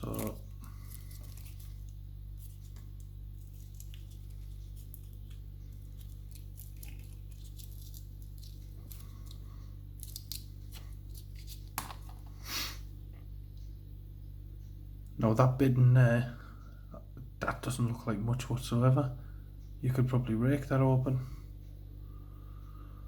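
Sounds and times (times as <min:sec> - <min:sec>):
tape tearing and crinkling: 0:00.0 - 0:02.8, 0:03.4 - 0:09.4, 0:10.0 - 0:12.1
steady low hum: 0:00.0 - 0:23.0.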